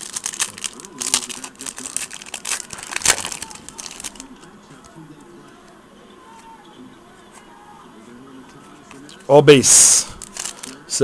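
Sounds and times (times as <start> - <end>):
plastic foil wrapper crinkling: 0.0 - 4.5, 9.8 - 11.0.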